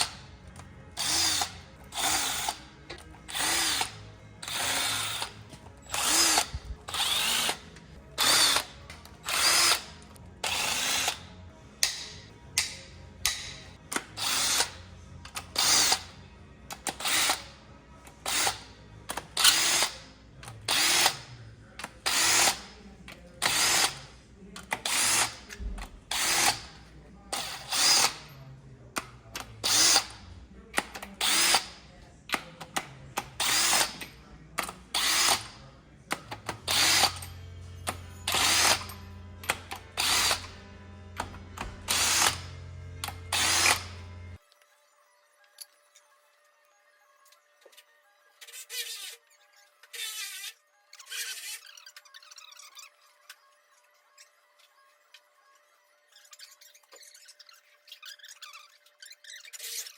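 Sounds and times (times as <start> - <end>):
power tool bursts: 8.2 - 11.2, 22.0 - 22.8, 27.4 - 28.3, 34.9 - 35.6, 36.6 - 44.4.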